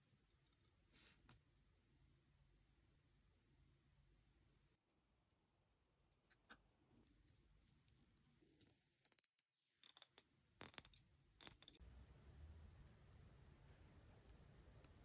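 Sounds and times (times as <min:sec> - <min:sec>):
small metal parts clicking: 0:09.0 - 0:15.0.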